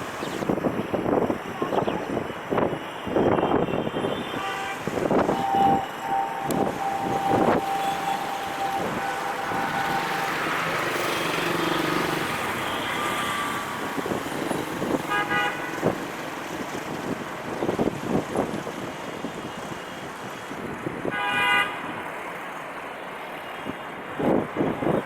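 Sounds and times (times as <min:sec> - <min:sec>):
passing train: 0:00.0 - 0:25.0
traffic rumble: 0:00.0 - 0:25.0
horn blasts: 0:03.3 - 0:14.1, 0:15.0 - 0:16.0.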